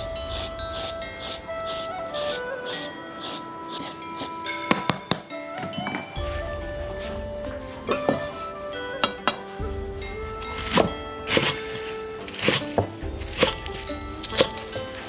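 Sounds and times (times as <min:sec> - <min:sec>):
instrumental background music: 0:00.0 - 0:15.0
kitchen pots and utensils clinking: 0:00.0 - 0:15.0.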